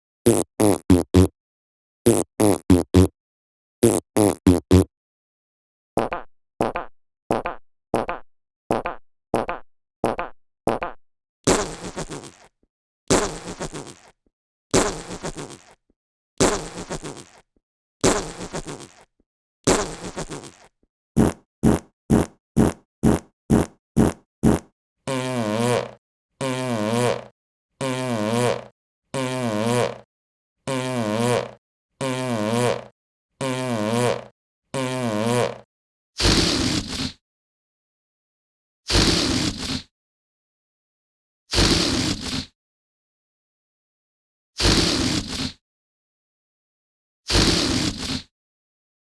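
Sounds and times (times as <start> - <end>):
fart sound effects: 0.3 - 1.3, 2.1 - 3.1, 3.8 - 4.9, 11.5 - 12.5, 13.1 - 15.8, 16.4 - 17.4, 18.0 - 19.1, 19.7 - 30.1, 30.7 - 35.6, 36.2 - 37.1, 41.5 - 42.4, 44.6 - 45.6, 47.3 - 48.2.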